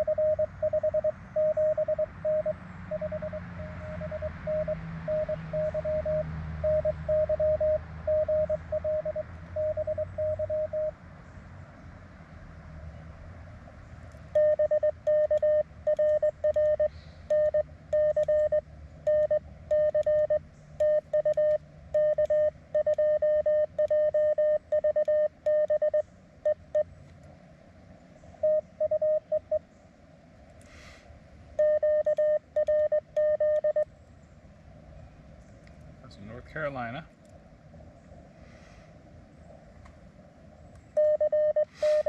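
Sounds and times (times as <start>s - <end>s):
morse code tone: 0.0s - 11.0s, 14.3s - 26.8s, 28.4s - 29.6s, 31.6s - 33.8s, 41.0s - 42.0s
radio receiver hiss: 41.7s - 42.0s.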